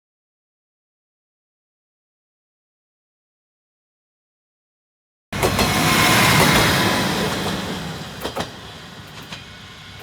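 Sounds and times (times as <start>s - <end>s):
train rumbling past: 5.4s - 10.0s.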